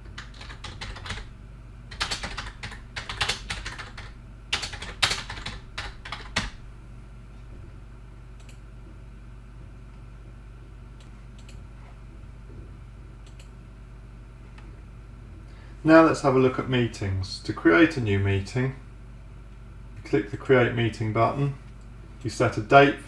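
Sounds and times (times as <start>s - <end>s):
typing on computer keyboard: 0.0s - 1.3s, 1.9s - 6.6s
low steady hum: 0.0s - 23.0s.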